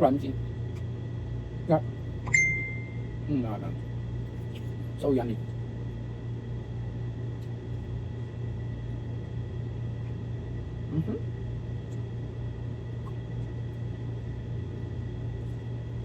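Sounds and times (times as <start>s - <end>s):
low electrical hum: 0.0s - 16.0s
faint high whine: 1.7s - 3.8s.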